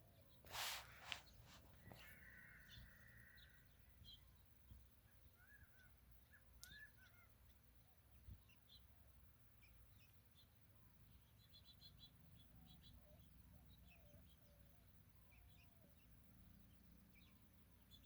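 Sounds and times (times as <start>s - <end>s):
wild birds calling: 1.6s - 8.9s.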